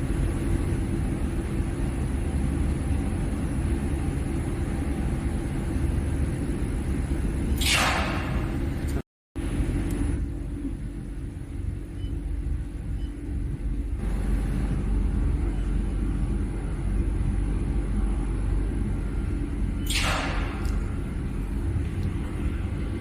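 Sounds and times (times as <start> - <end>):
low machine rumble: 0.0 - 23.0
faint high whine: 8.2 - 23.0.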